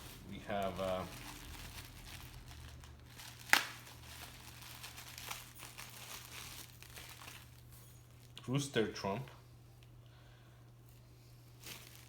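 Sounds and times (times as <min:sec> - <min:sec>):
packaging crinkling: 0:00.0 - 0:08.5, 0:11.6 - 0:12.0.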